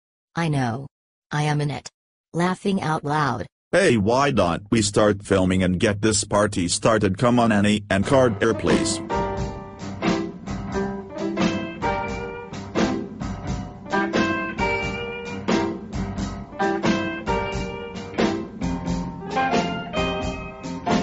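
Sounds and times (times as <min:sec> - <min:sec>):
drum kit beat: 0:03.8 - 0:21.0
plucked guitar: 0:19.2 - 0:21.0.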